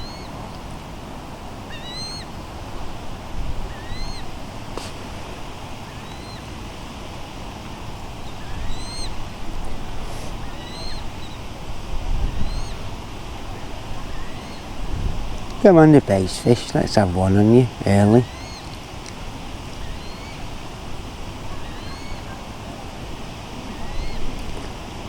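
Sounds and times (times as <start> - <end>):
bird chirping: 19.8 - 20.4.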